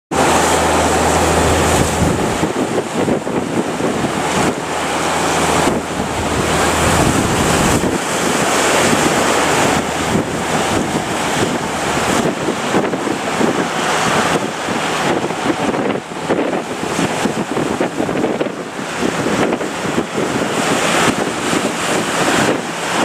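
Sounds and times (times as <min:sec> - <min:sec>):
breaking surf rushing: 0:00.1 - 0:23.0
wind buffeting microphone: 0:00.1 - 0:23.0
low hum: 0:00.2 - 0:15.0.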